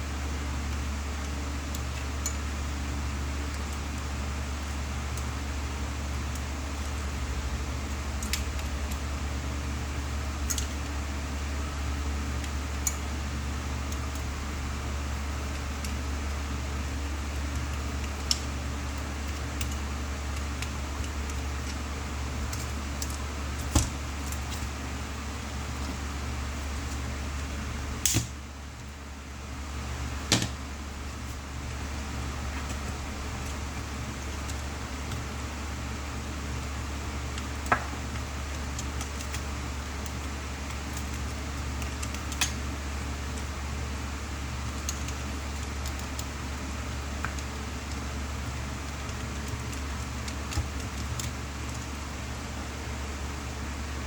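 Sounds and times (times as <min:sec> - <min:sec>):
steady low hum: 0:00.0 - 0:54.0
small parts clicking and tapping: 0:00.7 - 0:02.5, 0:06.3 - 0:07.0, 0:08.2 - 0:09.0, 0:10.4 - 0:10.8, 0:12.4 - 0:13.1, 0:17.2 - 0:21.8, 0:22.4 - 0:24.7, 0:37.3 - 0:42.6, 0:44.7 - 0:52.0
small parts and tools clicking: 0:10.4 - 0:10.8, 0:17.4 - 0:21.8.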